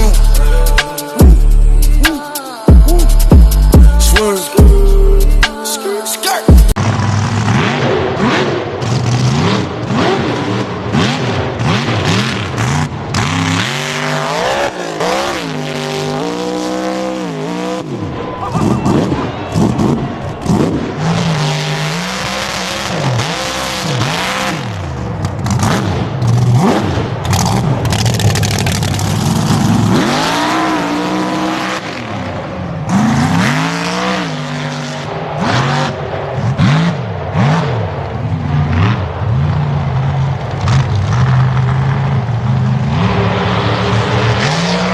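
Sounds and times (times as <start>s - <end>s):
off-road engines revving: 6.7s - 44.9s.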